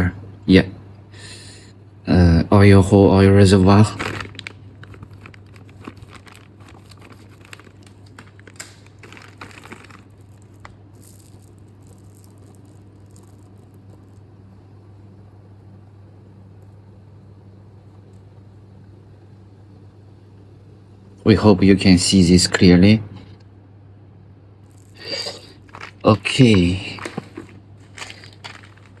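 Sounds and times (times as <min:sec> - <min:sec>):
steady low hum: 0:00.0 - 0:29.0
chainsaw chain links rattling: 0:03.9 - 0:12.3, 0:24.8 - 0:29.0.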